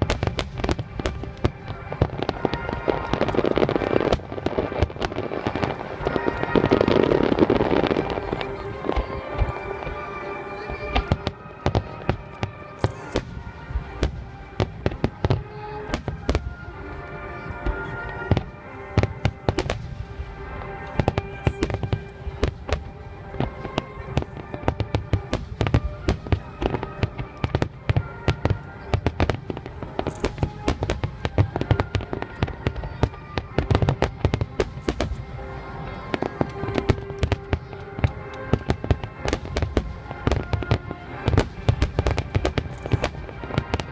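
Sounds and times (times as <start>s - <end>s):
fireworks bangs and crackling: 0.0s - 43.9s
music with sustained tones: 0.0s - 43.9s.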